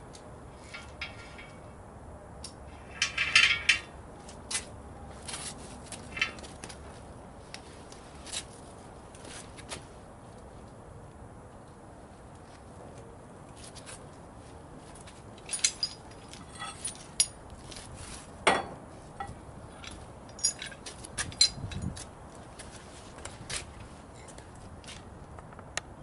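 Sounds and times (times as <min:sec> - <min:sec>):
steel chain clinking: 0:00.6 - 0:01.6, 0:02.7 - 0:04.0, 0:06.0 - 0:06.5, 0:15.4 - 0:17.4, 0:19.8 - 0:22.0.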